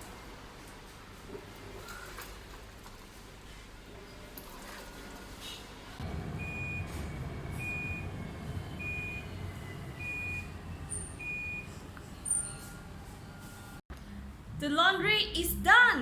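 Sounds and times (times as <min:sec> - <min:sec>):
washing machine beeping: 0:03.8 - 0:13.8
low steady rumble: 0:06.0 - 0:11.8.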